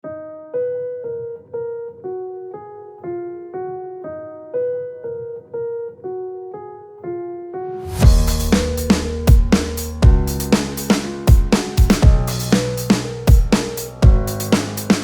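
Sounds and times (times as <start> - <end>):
keyboard playing piano notes: 0.0 - 15.0.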